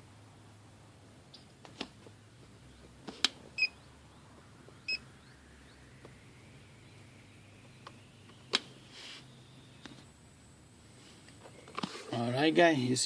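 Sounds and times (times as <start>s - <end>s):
short electronic beeps: 3.6s - 3.8s, 4.8s - 5.0s.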